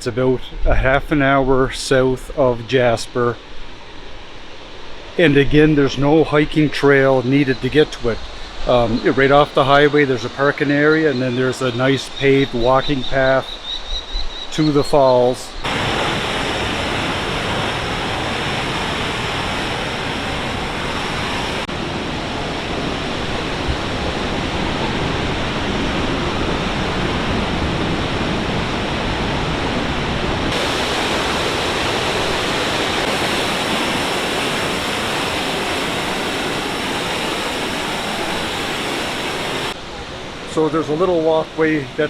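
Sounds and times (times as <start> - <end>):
waterfall rushing: 15.6 - 42.0.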